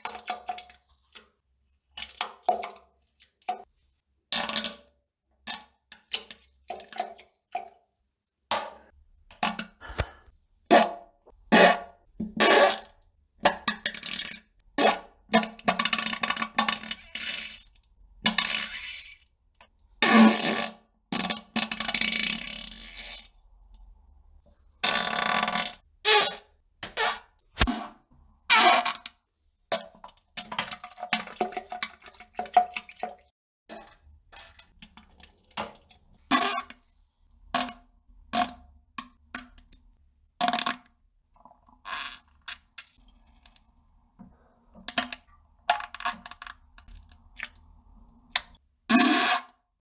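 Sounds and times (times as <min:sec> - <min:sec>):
fart and splattering poop sounds: 0:09.8 - 0:10.9.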